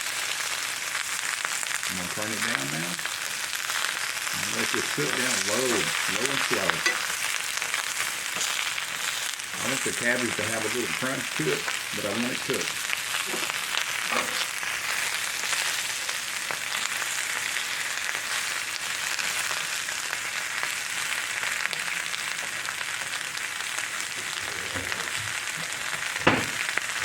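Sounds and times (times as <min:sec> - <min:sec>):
cabbage sizzling in a skillet: 0:00.0 - 0:27.0
sharp knock: 0:26.2 - 0:26.6.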